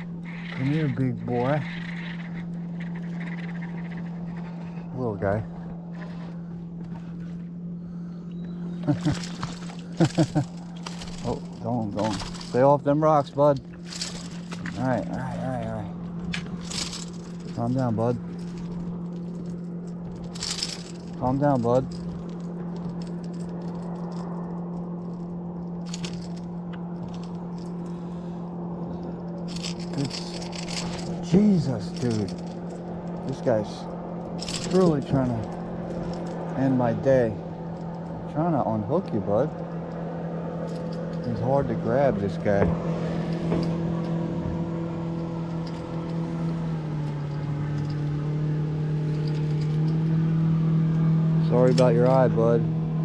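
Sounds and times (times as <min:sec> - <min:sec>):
low hum: 0:00.0 - 0:53.0
fish thrashing with hooks rattling: 0:08.8 - 0:28.0, 0:29.2 - 0:38.4, 0:40.6 - 0:50.3.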